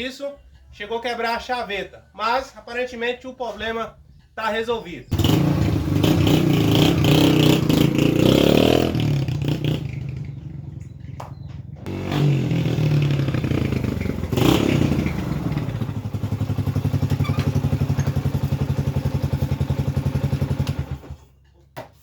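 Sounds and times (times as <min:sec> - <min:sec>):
motorcycle engine revving and idling: 0:05.1 - 0:21.4.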